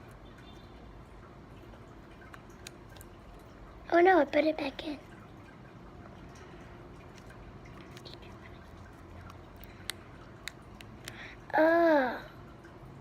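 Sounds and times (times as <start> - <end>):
slime squelching: 7.0 - 11.4.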